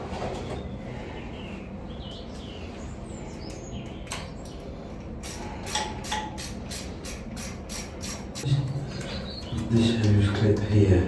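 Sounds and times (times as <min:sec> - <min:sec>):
hand ratchet clicking: 0:05.2 - 0:08.4.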